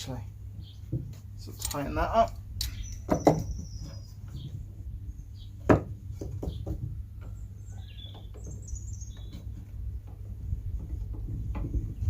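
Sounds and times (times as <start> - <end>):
birds chirping faintly: 0.0 - 12.0
sharp wooden knock: 3.0 - 3.6, 5.7 - 6.9.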